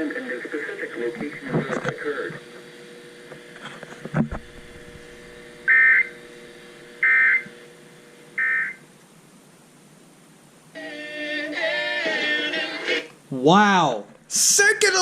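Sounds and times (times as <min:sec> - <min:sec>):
faint radio hum and hiss: 0:00.0 - 0:15.0
digital data tone bursts: 0:05.7 - 0:06.2, 0:07.0 - 0:07.5, 0:08.4 - 0:08.8
music with singing: 0:10.8 - 0:13.2.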